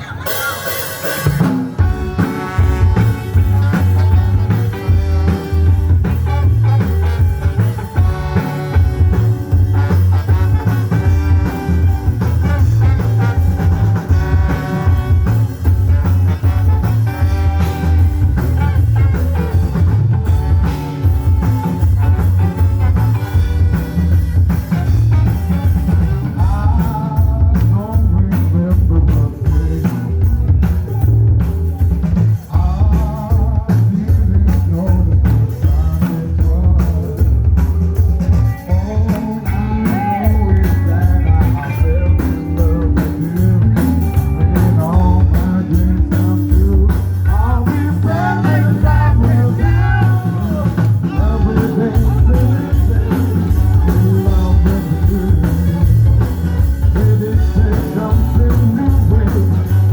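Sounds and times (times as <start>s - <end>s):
bass guitar: 0.0s - 59.9s
electric guitar: 0.0s - 59.9s
steady drum beat: 0.0s - 59.9s
person singing: 24.4s - 59.9s.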